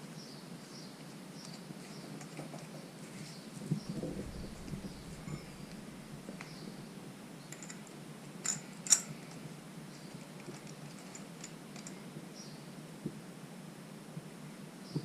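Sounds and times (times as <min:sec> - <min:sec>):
clicks and taps of metal parts: 0:07.5 - 0:09.4, 0:10.1 - 0:12.0.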